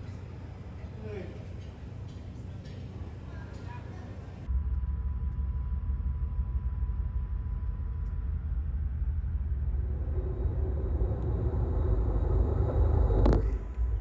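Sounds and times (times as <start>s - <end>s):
train wheels rumbling on track: 9.4s - 14.0s.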